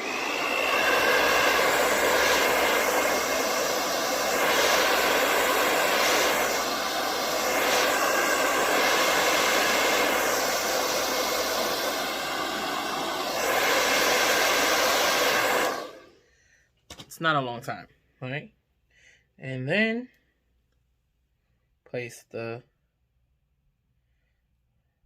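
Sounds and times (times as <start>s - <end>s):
hair dryer blowing: 0.0s - 16.2s.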